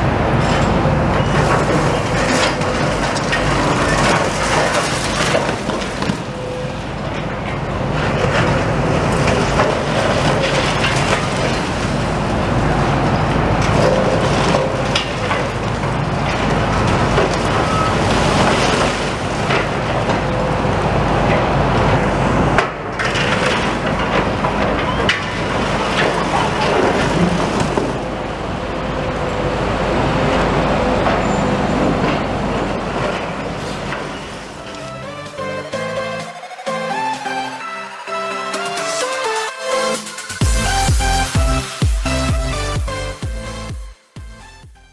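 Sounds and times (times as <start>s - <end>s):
excavator engine running: 0.0s - 44.9s
concrete cracking and crunching: 1.3s - 6.3s.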